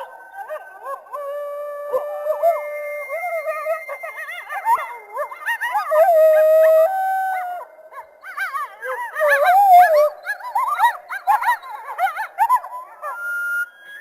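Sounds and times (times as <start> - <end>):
coyotes howling and yipping: 0.0 - 14.0.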